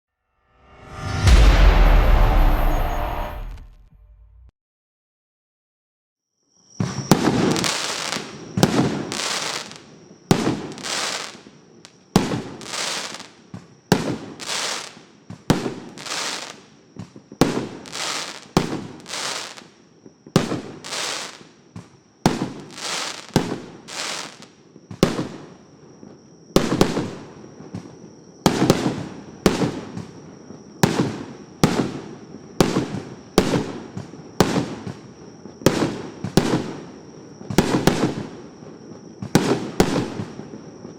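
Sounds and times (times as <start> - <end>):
fireworks bangs: 0.6 - 4.5.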